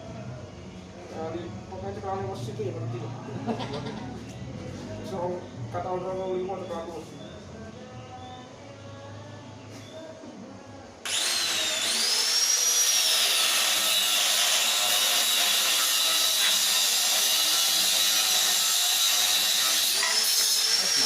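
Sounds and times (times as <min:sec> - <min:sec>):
power tool motor whine: 0:11.1 - 0:21.0.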